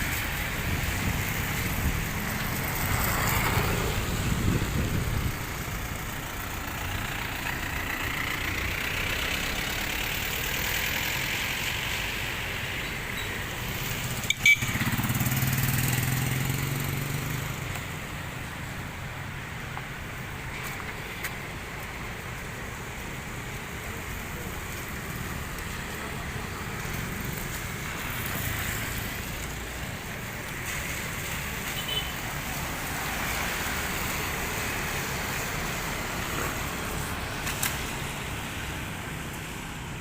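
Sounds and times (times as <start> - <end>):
motor vehicles passing: 0.0 - 40.0.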